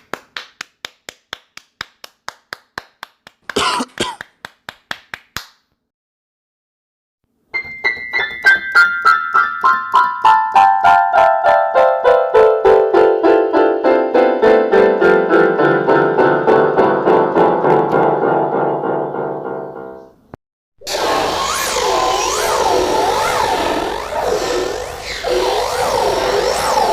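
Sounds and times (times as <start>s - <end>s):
piano descending single notes: 7.5s - 20.1s.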